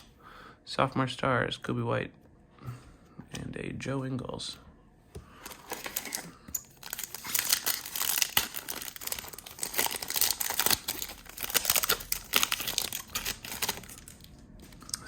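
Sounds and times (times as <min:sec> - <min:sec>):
foil wrapper tearing and crinkling: 0:05.5 - 0:14.4.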